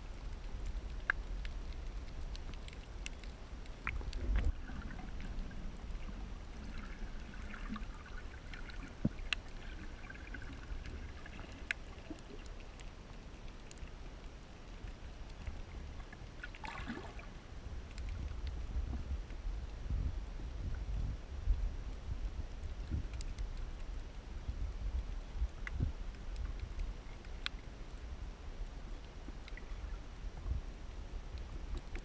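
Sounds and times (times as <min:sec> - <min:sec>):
water sloshing and gurgling: 0:00.1 - 0:21.1
steady low rumble: 0:17.0 - 0:32.0.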